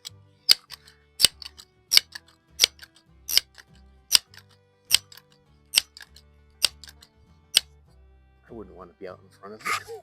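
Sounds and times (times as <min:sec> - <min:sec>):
music with clicking beat: 0:00.0 - 0:07.8.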